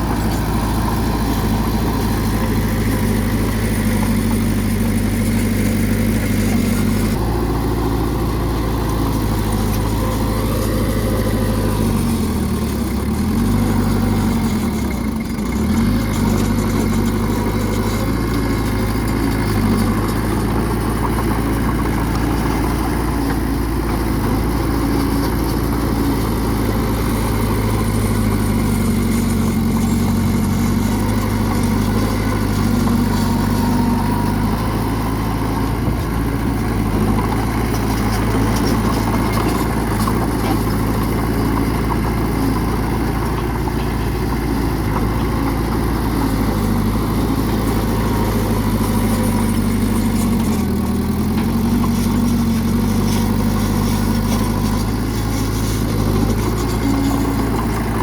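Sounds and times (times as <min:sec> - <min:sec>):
bulldozer diesel engine running: 0:00.0 - 0:58.0.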